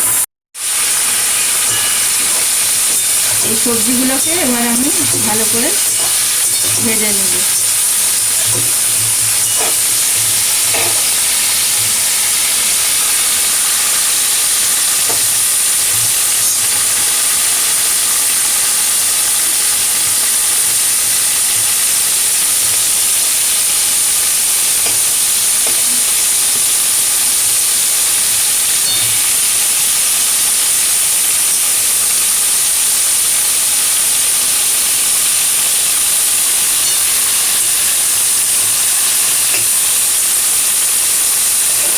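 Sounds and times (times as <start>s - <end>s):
vegetables sizzling in oil: 0.0s - 41.9s.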